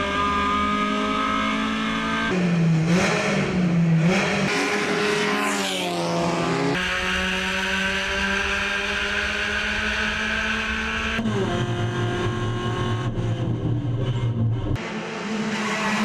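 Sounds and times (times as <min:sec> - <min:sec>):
racing car engines high revs: 0:00.0 - 0:16.0.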